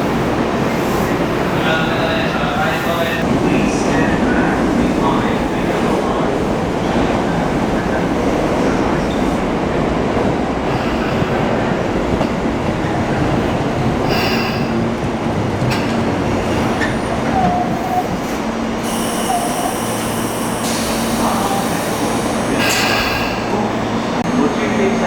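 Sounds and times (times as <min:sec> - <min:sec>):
train rolling noise: 0:00.0 - 0:25.0.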